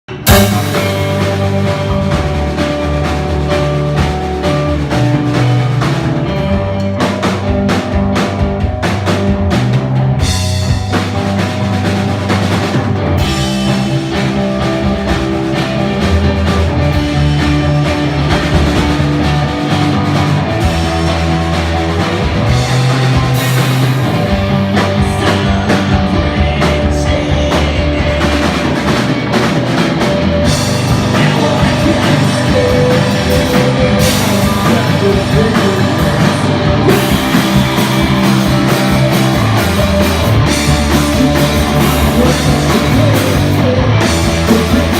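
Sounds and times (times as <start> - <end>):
bass: 0.0 - 44.9
drum kit: 0.0 - 44.9
guitar: 0.0 - 44.9
person singing: 24.2 - 29.1, 30.4 - 44.9.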